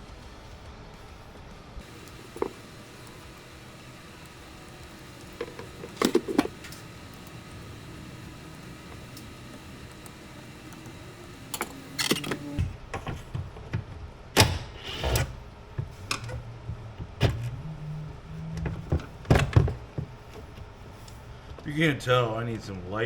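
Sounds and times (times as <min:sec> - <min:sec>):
short low whirring hum: 0:01.8 - 0:12.9.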